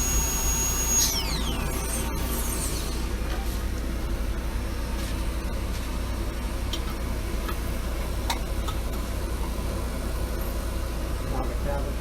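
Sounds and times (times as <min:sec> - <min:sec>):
machine hum with hiss: 0:00.0 - 0:06.6.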